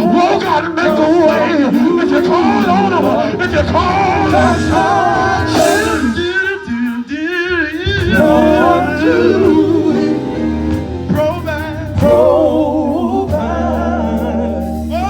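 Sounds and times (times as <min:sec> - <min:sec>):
gospel band playing: 0:00.0 - 0:15.0
person singing with vibrato: 0:00.0 - 0:15.0.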